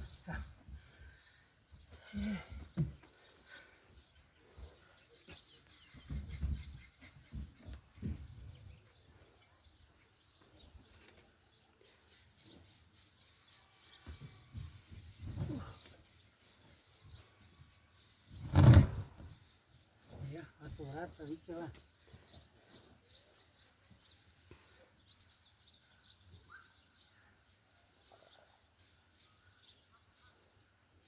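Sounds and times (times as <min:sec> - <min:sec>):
faint bird chirps: 0:01.1 - 0:31.0.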